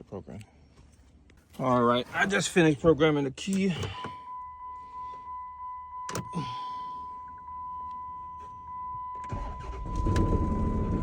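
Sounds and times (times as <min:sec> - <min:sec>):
dashboard warning chime dings: 0:03.4 - 0:11.0
car engine cranking and starting: 0:09.1 - 0:11.0.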